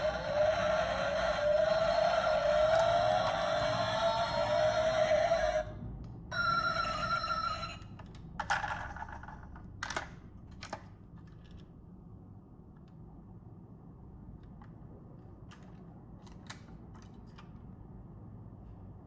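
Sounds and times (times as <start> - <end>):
ringing electronic tone: 6.3 - 7.8.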